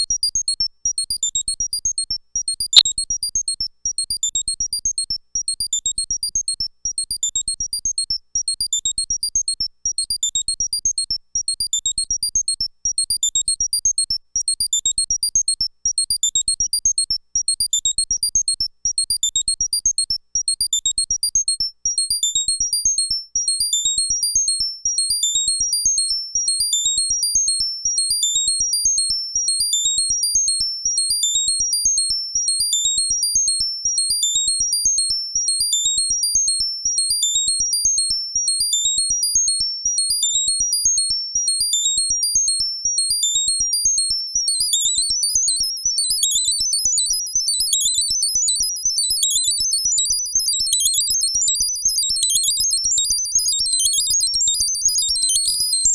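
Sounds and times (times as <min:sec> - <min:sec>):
high-pitched synthesizer bleeps: 0:43.1 - 0:55.9.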